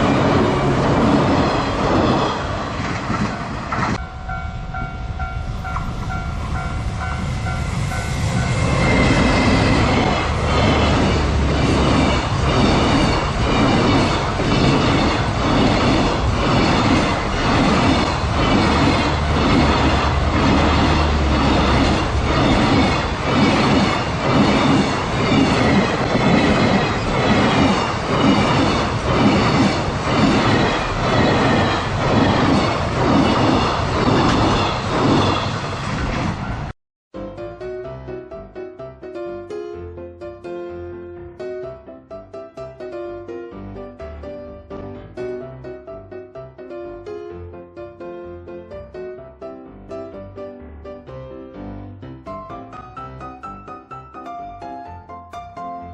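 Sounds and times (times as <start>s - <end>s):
freight train passing: 0.0s - 36.8s
level crossing bell ringing: 4.0s - 7.6s.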